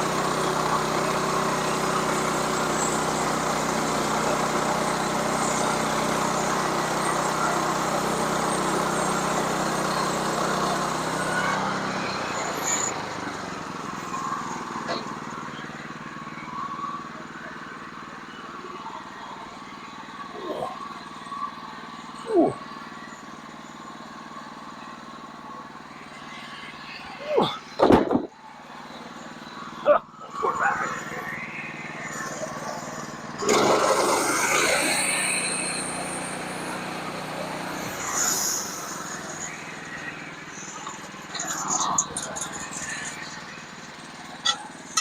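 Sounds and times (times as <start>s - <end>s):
saw cutting through log: 0.0s - 15.0s, 30.2s - 45.0s
sawmill engine running: 0.0s - 45.0s.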